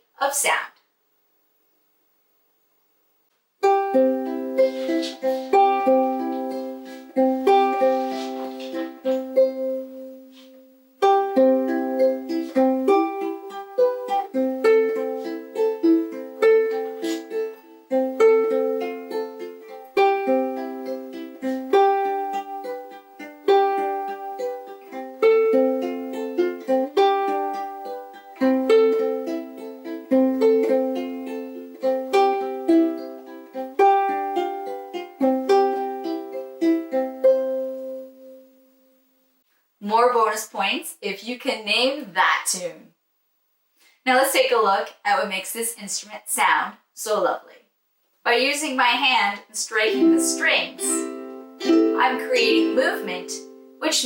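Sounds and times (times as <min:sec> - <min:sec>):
ukulele strumming chords: 0:03.6 - 0:39.0, 0:49.8 - 0:54.0.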